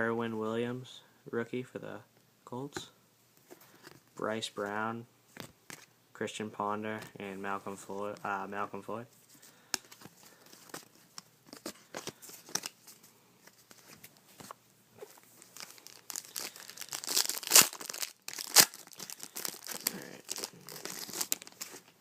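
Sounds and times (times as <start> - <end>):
wrapper rustling and crinkling: 9.9 - 22.0
wrapper ripping: 15.4 - 21.9.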